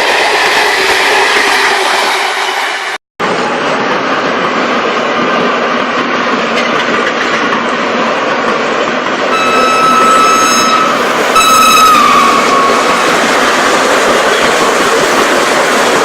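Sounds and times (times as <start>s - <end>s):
train rumbling on rails: 0.0s - 16.0s
wheel squeal: 9.3s - 13.1s.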